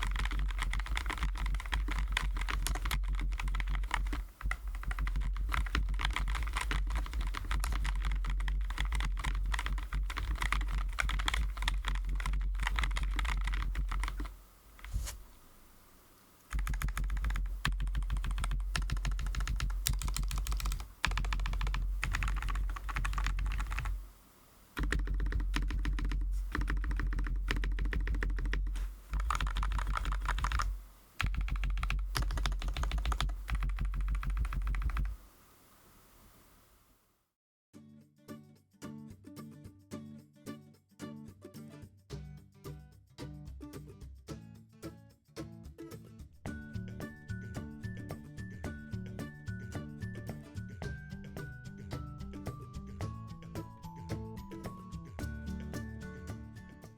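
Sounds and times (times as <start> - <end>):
fast typing on mechanical keyboard: 0.0 - 14.4, 16.5 - 24.0, 24.8 - 35.2.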